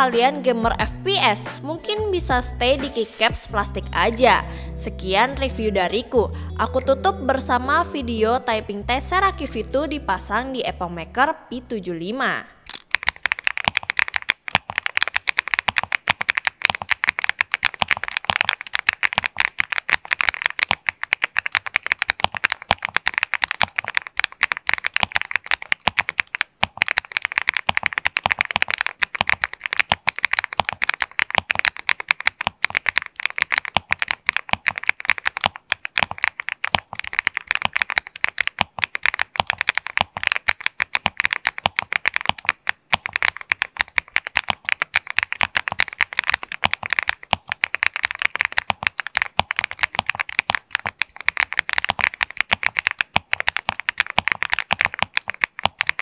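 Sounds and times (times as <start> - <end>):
fast mechanical keyboard typing: 12.7 - 56.0.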